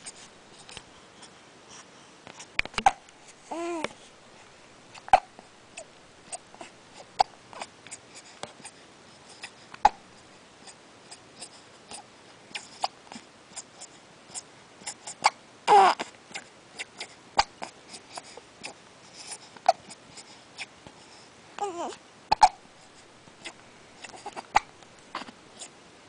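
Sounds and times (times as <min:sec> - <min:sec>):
baby hiccuping: 0:02.8 - 0:03.9, 0:05.0 - 0:06.4, 0:14.3 - 0:17.7, 0:19.6 - 0:20.0, 0:21.6 - 0:22.7, 0:23.4 - 0:25.7
baby cooing: 0:02.8 - 0:04.0, 0:13.6 - 0:17.2, 0:21.6 - 0:22.6, 0:23.4 - 0:25.7.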